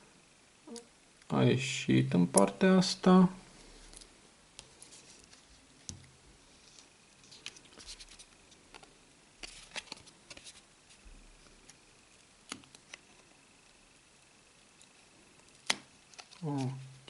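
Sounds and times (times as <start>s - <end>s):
plastic card clicking and scraping: 6.8s - 10.6s, 14.8s - 16.8s.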